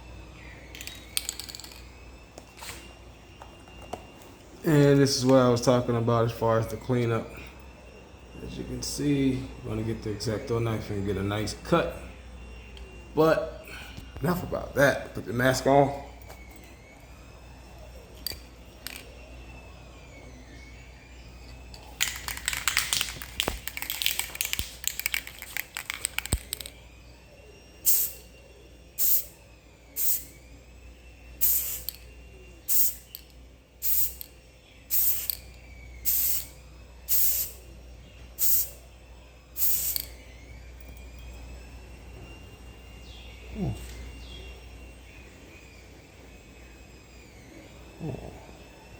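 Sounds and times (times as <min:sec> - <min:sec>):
spray can rattling: 0:00.8 - 0:01.8, 0:22.0 - 0:26.7, 0:27.8 - 0:28.2, 0:29.0 - 0:29.3, 0:30.0 - 0:30.2, 0:31.4 - 0:32.0, 0:32.7 - 0:33.2, 0:33.8 - 0:34.3, 0:34.9 - 0:35.4, 0:36.1 - 0:36.5, 0:37.1 - 0:37.6, 0:38.4 - 0:38.8, 0:39.6 - 0:40.1
spray can hissing: 0:22.0 - 0:26.7, 0:27.8 - 0:28.2, 0:29.0 - 0:29.3, 0:30.0 - 0:30.3, 0:31.4 - 0:32.0, 0:32.7 - 0:33.2, 0:33.8 - 0:34.3, 0:34.9 - 0:35.4, 0:36.0 - 0:37.6, 0:38.4 - 0:38.8, 0:39.6 - 0:40.1.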